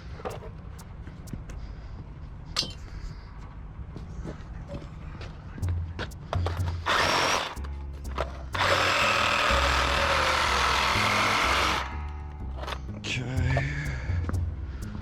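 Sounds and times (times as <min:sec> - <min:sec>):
background music with bass line: 0:05.6 - 0:15.0
power tool running: 0:06.8 - 0:07.6, 0:08.6 - 0:11.9.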